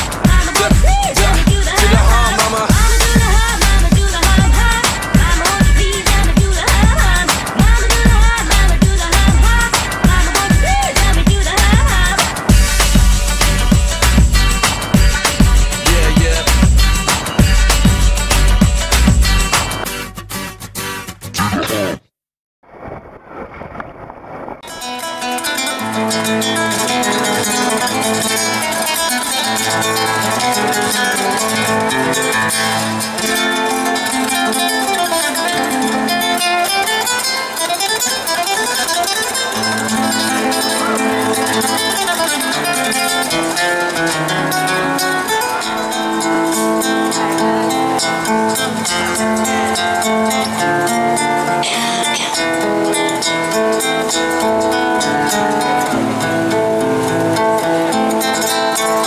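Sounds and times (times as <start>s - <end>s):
instrumental plucked guitar music: 0.0s - 21.8s, 24.6s - 59.0s.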